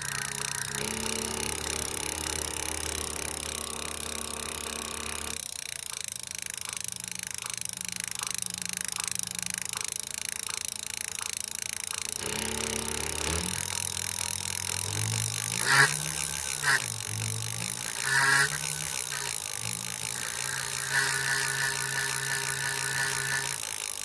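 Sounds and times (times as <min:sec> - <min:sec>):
electric bike motor whining: 0:00.0 - 0:24.0
regular clicking: 0:00.0 - 0:24.0.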